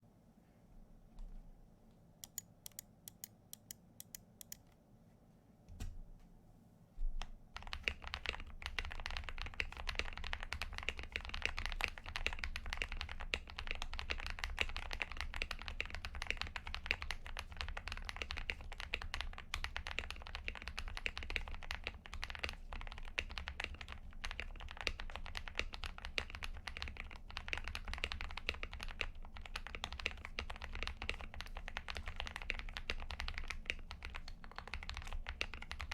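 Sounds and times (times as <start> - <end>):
fast mechanical keyboard typing: 7.6 - 35.9.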